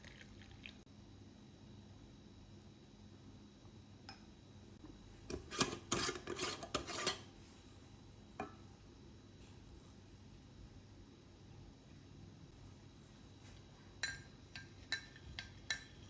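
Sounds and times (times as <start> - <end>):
utensils clinking against a dish: 5.3 - 7.3, 14.0 - 16.0.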